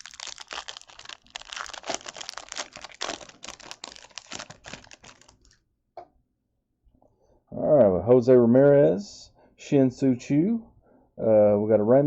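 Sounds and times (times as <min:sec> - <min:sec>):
plastic wrapper crinkling: 0:00.0 - 0:05.6.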